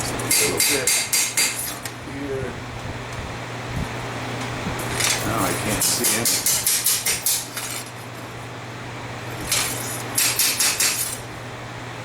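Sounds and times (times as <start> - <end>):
steady low hum: 0.0 - 12.0
hammer striking metal blade: 10.2 - 11.2.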